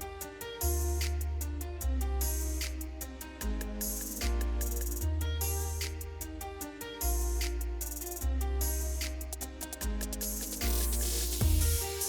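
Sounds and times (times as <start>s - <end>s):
deep bass line: 0.0s - 12.0s
quick ticking beat: 10.0s - 12.0s.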